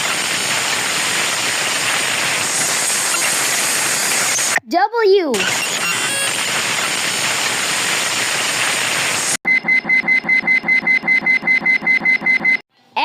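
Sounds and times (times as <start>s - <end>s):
rapid electronic alarm beeping: 3.0s - 4.6s, 5.4s - 7.0s, 9.5s - 12.6s.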